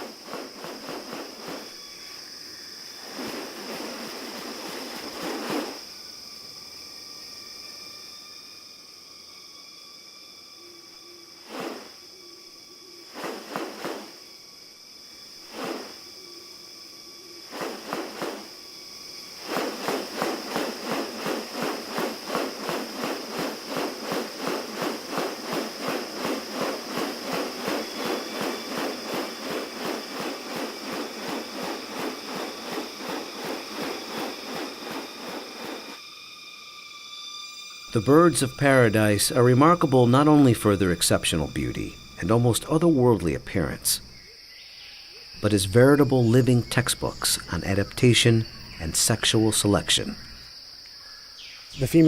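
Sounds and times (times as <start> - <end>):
high-pitched insect drone: 0.0 - 52.0
fast even pulsing: 19.3 - 36.0.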